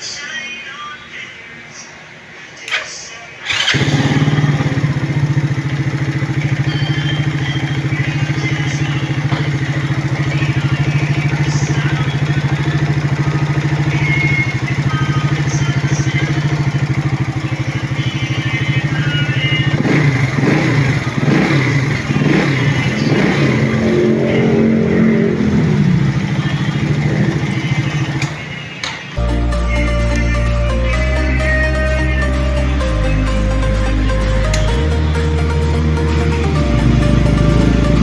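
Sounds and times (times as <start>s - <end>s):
engine clatter: 3.4s - 29.2s, 35.8s - 38.0s
motorcycle engine idling and revving: 3.4s - 29.2s, 32.4s - 38.0s.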